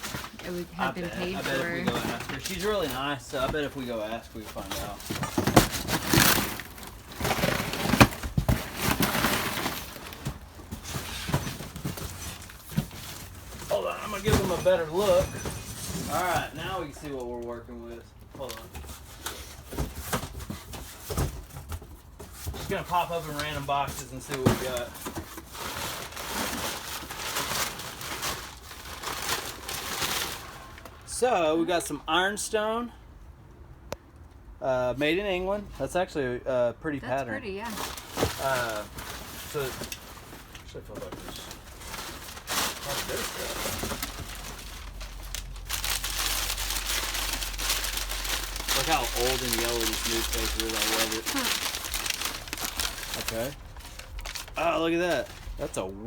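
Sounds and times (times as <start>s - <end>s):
paper wrapping crinkling: 0.0s - 3.2s, 4.4s - 15.2s, 23.2s - 31.0s, 37.7s - 55.7s
hard objects knocking inside boxes: 0.0s - 16.7s, 18.6s - 30.8s, 37.8s - 54.2s
cardboard rustling and scraping: 0.0s - 17.3s, 18.4s - 31.0s, 37.8s - 55.8s.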